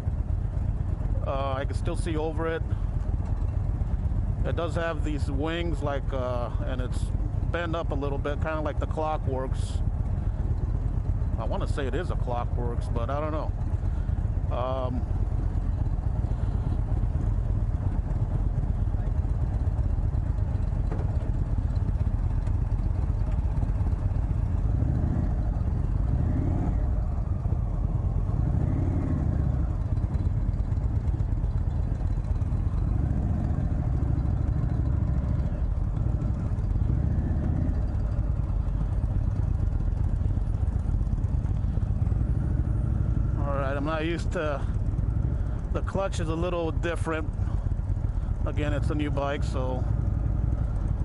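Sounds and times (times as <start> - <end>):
motorcycle engine at low revs: 0.0 - 51.0.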